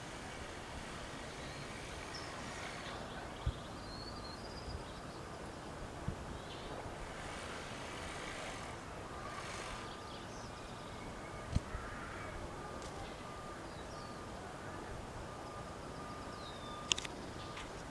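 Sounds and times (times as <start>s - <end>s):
outdoor background noise: 0.0s - 17.9s
faint bird chirps: 1.1s - 5.7s, 9.1s - 17.9s.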